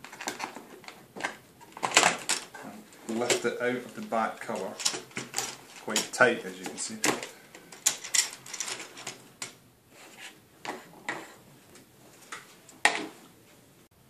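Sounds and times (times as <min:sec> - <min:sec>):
plastic parts clicking and scraping: 0:00.0 - 0:09.6.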